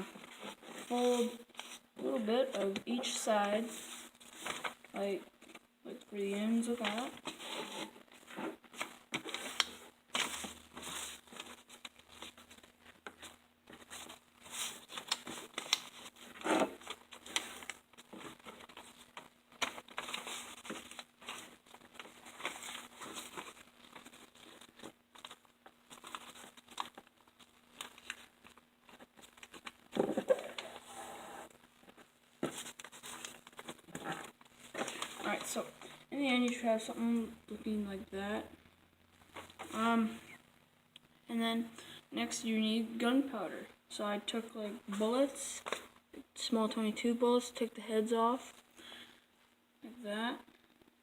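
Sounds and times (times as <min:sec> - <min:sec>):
paper folding and crinkling: 0:00.0 - 0:05.7, 0:06.6 - 0:36.5, 0:45.6 - 0:46.0.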